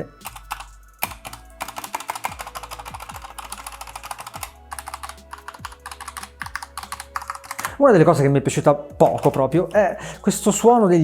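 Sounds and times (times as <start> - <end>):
mechanical keyboard typing: 0.2 - 7.8, 9.0 - 9.8.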